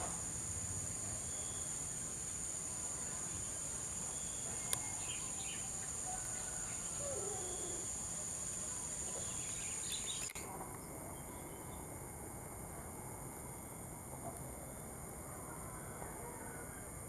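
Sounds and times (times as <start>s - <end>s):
dove cooing: 6.2s - 7.9s.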